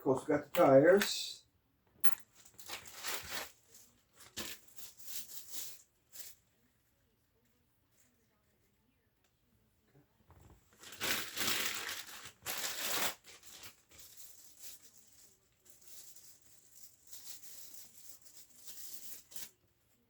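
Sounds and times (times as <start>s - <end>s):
packing material crinkling: 2.3s - 6.5s, 10.7s - 19.6s.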